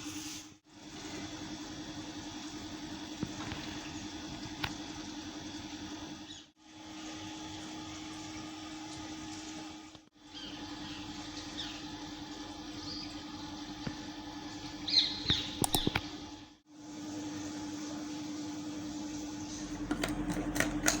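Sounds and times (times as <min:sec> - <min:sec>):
sharp clicks: 0:15.3 - 0:16.0.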